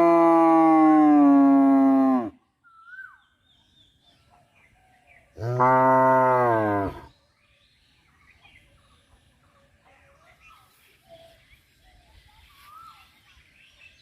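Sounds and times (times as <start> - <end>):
faint bird chirps: 2.6 - 5.4, 6.9 - 14.0
cow mooing: 5.4 - 7.0.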